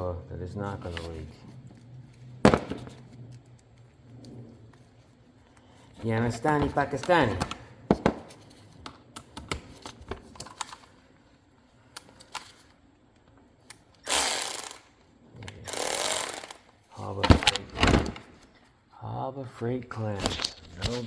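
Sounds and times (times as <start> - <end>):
handling clicks and knocks: 6.2 - 10.9, 17.2 - 18.5
handheld power tool running: 14.0 - 14.9, 15.7 - 16.6.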